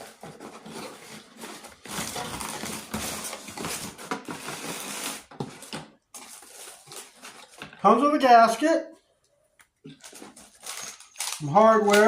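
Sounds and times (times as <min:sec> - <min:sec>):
packaging rustling: 0:00.0 - 0:07.8, 0:09.9 - 0:12.0.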